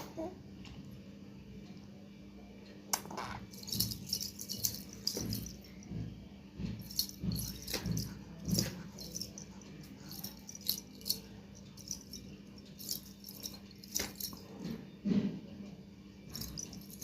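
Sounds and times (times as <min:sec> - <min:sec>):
light rattling and jingling: 0:03.5 - 0:14.8, 0:16.3 - 0:17.0.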